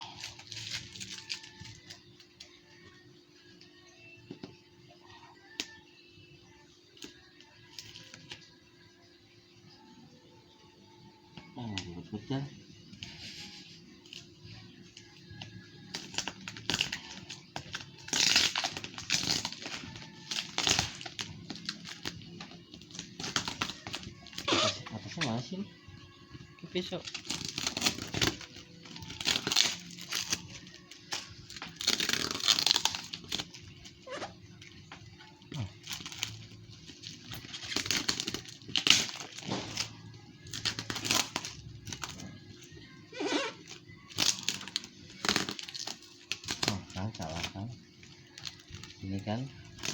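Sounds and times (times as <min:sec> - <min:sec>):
plastic and tape crinkling and tearing: 0:00.0 - 0:03.0, 0:06.9 - 0:08.6, 0:12.8 - 0:25.7, 0:26.4 - 0:49.9
packaging crinkling and rustling: 0:43.6 - 0:49.9.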